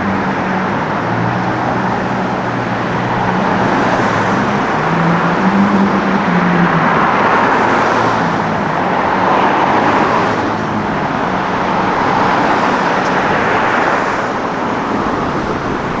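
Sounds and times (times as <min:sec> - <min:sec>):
cars driving by: 0:00.0 - 0:16.0
low engine hum: 0:00.0 - 0:16.0.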